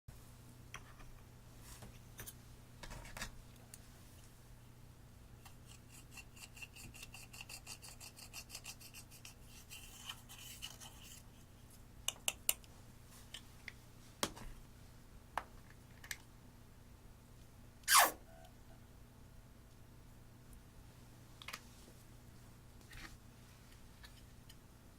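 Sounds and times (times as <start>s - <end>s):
loud short swish: 17.9s - 18.2s.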